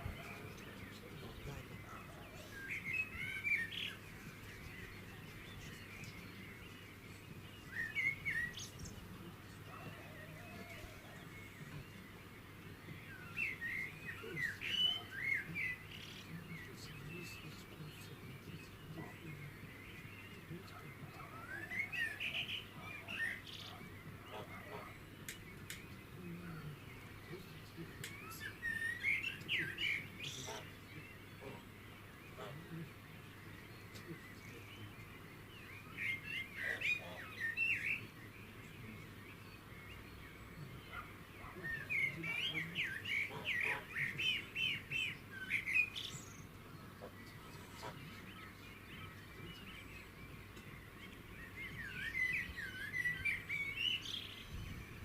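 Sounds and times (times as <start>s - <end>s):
songbirds chirping: 0.0s - 55.0s
steady low background noise: 0.0s - 55.0s.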